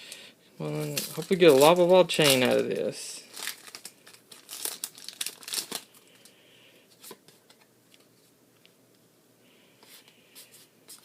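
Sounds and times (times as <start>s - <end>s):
cards rustling and clicking: 0.8s - 2.8s
foil wrapper crinkling: 0.8s - 6.3s.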